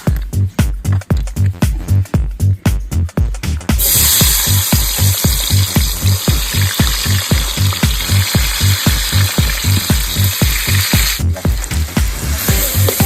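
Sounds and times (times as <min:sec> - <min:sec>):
background music with low beat: 0:00.0 - 0:13.0
steady hiss: 0:03.8 - 0:13.0.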